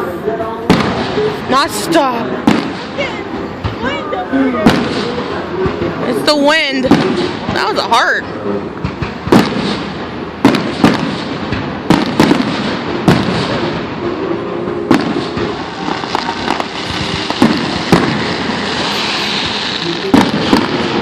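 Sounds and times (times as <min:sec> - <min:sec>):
firework bangs: 0:00.7 - 0:21.0.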